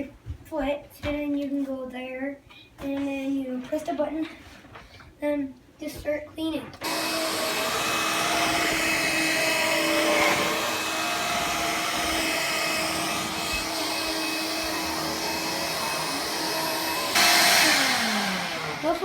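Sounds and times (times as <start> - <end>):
vacuum cleaner running: 6.8 - 19.0.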